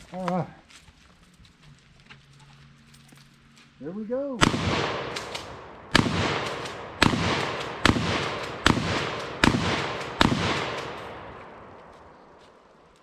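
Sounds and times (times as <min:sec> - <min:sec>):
shotgun shots with echo: 0:04.4 - 0:12.0.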